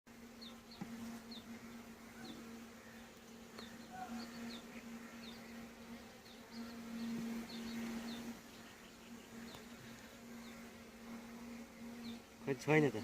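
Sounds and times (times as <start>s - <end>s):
honeybees buzzing: 0.1s - 13.0s.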